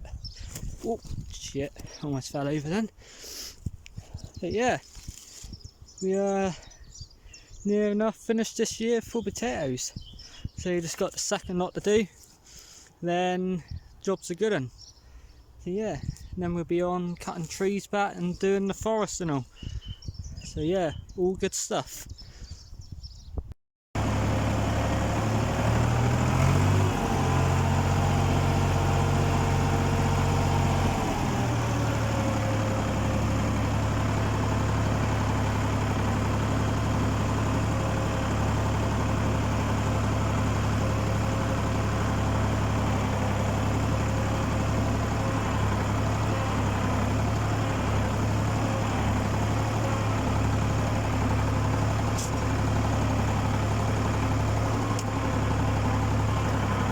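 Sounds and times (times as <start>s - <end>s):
tractor engine running: 0.4s - 3.0s, 24.0s - 56.9s.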